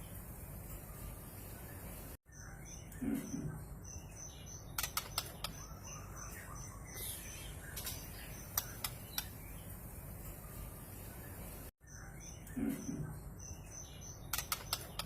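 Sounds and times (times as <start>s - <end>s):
bird sharp clicking calls: 4.7s - 5.8s, 7.8s - 9.4s, 14.2s - 15.0s.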